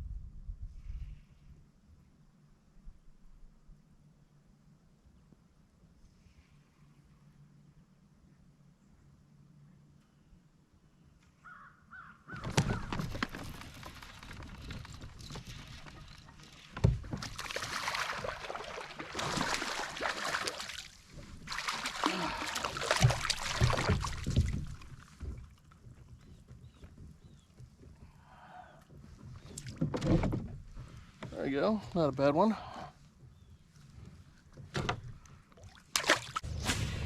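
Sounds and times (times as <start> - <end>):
water splashing and thrashing: 12.4 - 28.2, 34.4 - 37.0
knocks against a kayak: 23.0 - 25.4.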